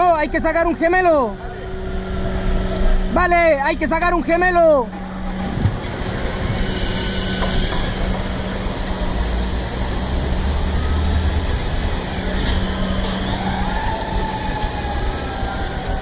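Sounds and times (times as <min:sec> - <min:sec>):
diesel engine running: 0:00.0 - 0:16.0
machinery hiss: 0:05.6 - 0:16.0.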